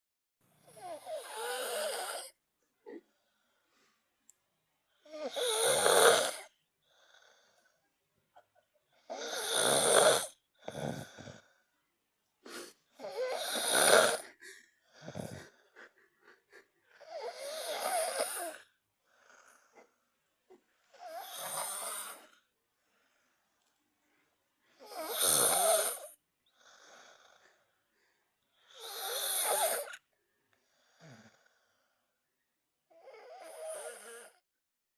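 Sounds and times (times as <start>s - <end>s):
snoring: 0.6s - 2.4s, 5.0s - 7.8s, 9.0s - 11.7s, 12.6s - 15.7s, 16.9s - 20.0s, 20.9s - 22.5s, 24.7s - 27.7s, 28.6s - 30.0s, 30.6s - 32.0s, 32.9s - 34.5s.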